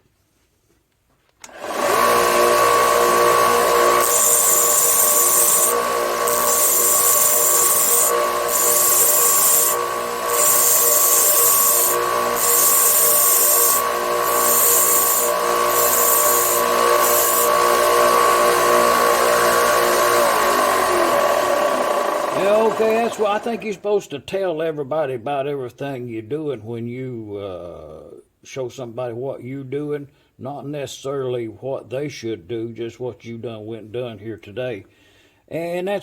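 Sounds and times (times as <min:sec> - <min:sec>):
power tool whining: 0:01.4 - 0:23.8.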